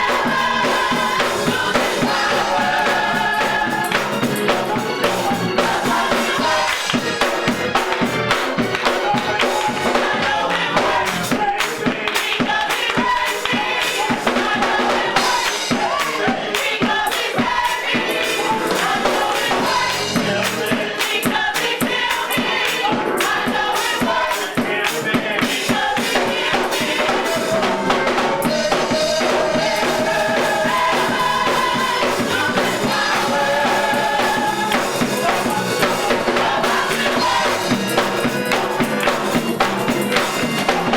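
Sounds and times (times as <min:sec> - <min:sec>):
gospel choir singing: 0:00.0 - 0:40.9
percussion beat: 0:00.0 - 0:40.9.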